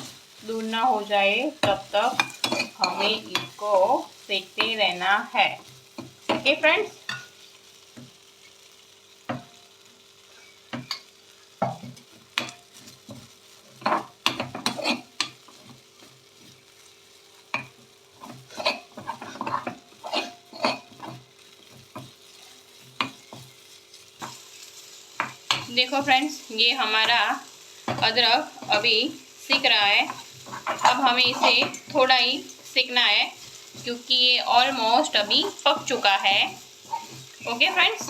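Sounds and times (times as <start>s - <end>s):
utensil scraping a pan: 0.0s - 4.0s, 11.6s - 16.6s, 17.4s - 27.2s, 27.8s - 38.0s
light sizzle of frying: 0.0s - 38.0s.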